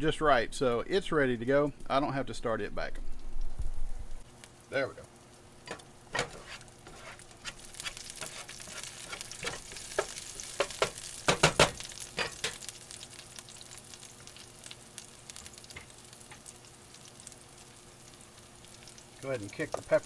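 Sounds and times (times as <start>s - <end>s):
onions sizzling in a skillet: 4.2s - 20.0s
utensil knocking and scraping pan: 5.7s - 12.6s.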